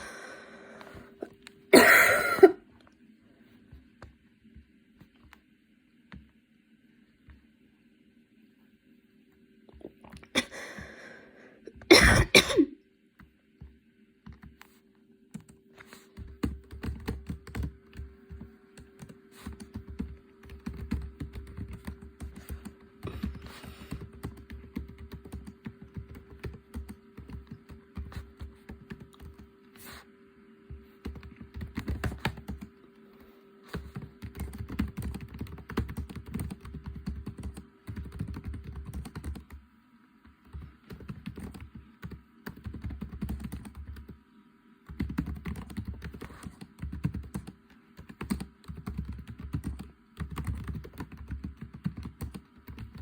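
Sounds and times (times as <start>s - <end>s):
faint steady hum: 0.0s - 53.0s
typing on computer keyboard: 16.2s - 29.5s, 31.0s - 32.7s, 33.7s - 39.6s, 40.4s - 44.2s, 44.9s - 53.0s.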